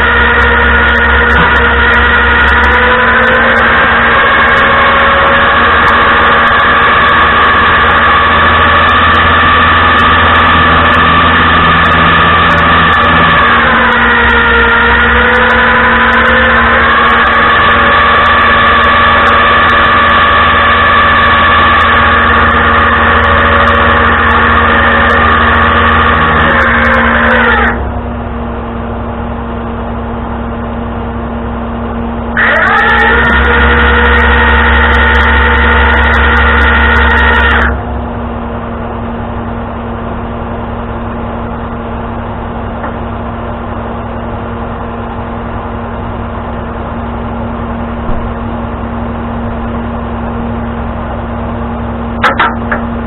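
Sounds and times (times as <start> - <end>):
truck engine whining: 0.0 - 53.0.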